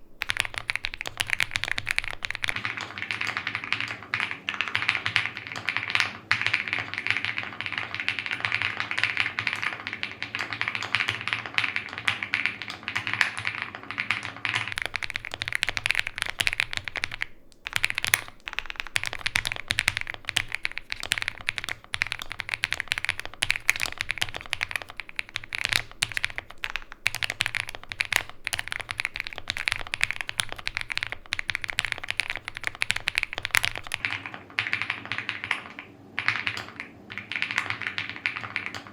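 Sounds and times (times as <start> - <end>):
mechanical keyboard typing: 0.0 - 2.6, 14.7 - 34.1.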